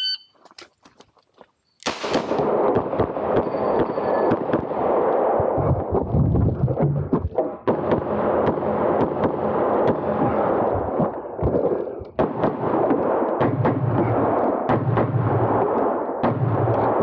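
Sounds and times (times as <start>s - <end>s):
pistol shots: 1.8s - 5.4s, 7.7s - 10.7s, 12.2s - 17.0s.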